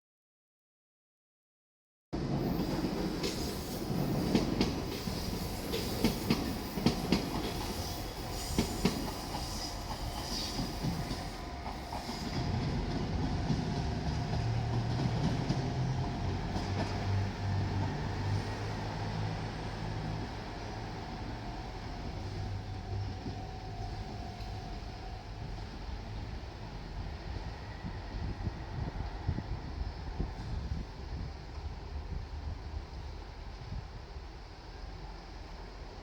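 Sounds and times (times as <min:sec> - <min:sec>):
train wheels clacking over rail joints: 0:02.7 - 0:18.0.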